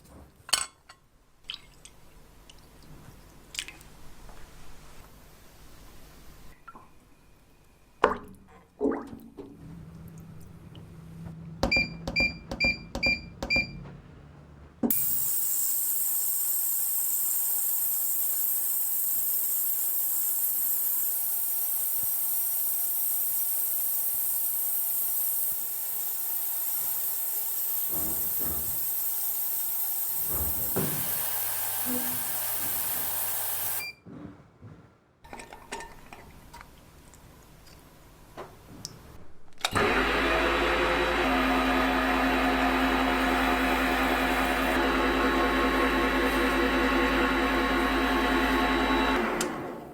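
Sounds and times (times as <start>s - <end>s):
compressed air hiss: 15.0s - 33.8s.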